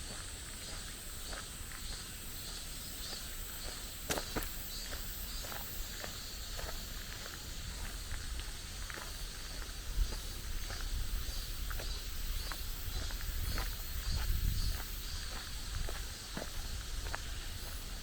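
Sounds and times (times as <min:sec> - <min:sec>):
footsteps crunching on path: 0:00.0 - 0:18.0.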